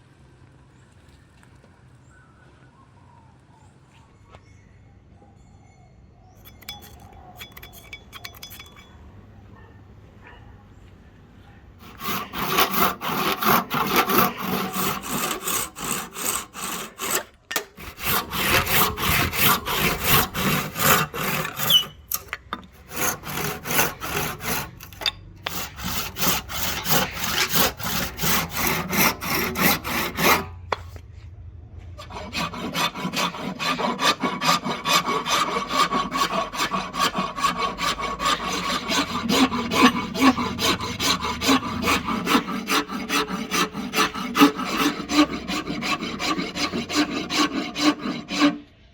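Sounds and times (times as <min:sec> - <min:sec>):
hand tool rasping wood: 0:06.4 - 0:08.9, 0:11.8 - 0:30.9, 0:32.0 - 0:48.7.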